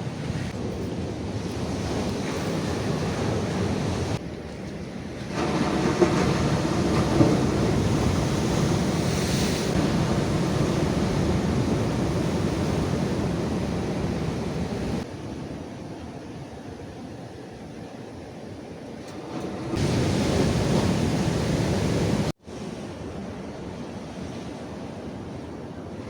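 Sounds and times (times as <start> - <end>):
sea waves rushing: 0.0 - 15.2, 19.0 - 26.0
wind buffeting microphone: 0.0 - 15.6, 19.1 - 22.3.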